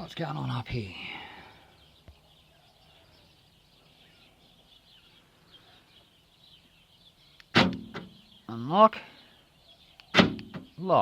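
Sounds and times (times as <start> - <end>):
faint birdsong: 0.0 - 11.0.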